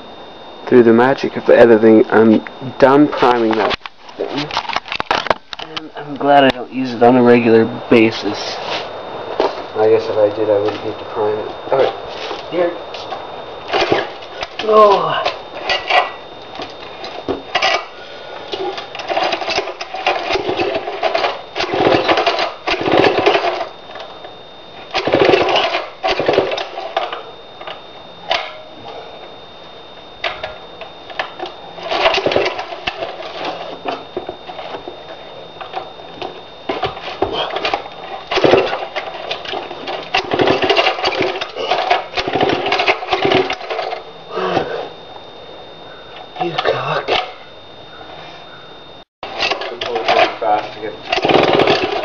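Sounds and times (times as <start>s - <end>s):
chainsaw being pull-started: 51.1s - 52.0s.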